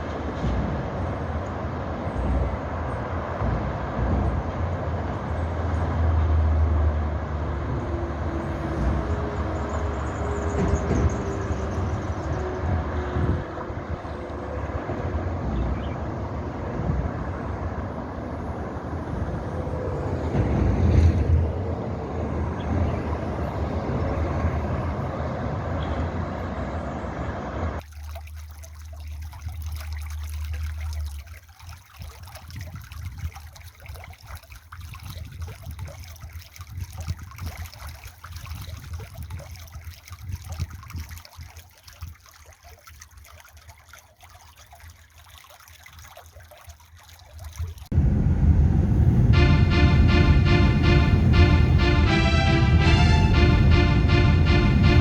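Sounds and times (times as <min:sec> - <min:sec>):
trickle of running water: 0:27.8 - 0:47.9
water dripping: 0:27.8 - 0:48.0
dense rumbling noise: 0:47.9 - 0:55.0.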